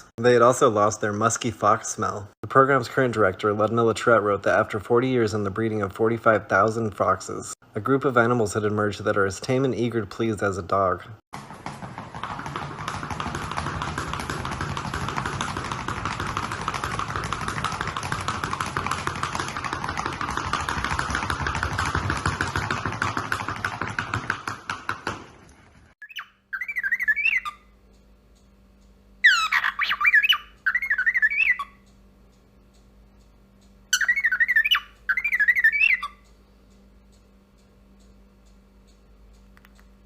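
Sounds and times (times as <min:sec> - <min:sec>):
dense steady rasping noise: 0:11.4 - 0:26.0
high-pitched warbling animal calls: 0:26.0 - 0:27.6, 0:29.2 - 0:31.8, 0:33.9 - 0:36.2.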